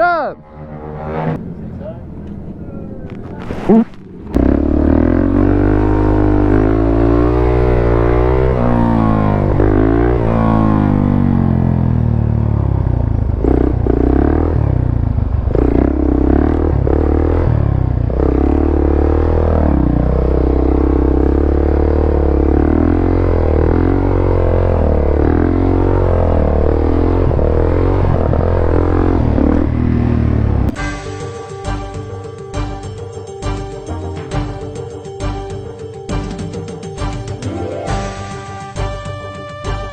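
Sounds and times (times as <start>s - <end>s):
small motorcycle engines revving: 3.7s - 30.8s.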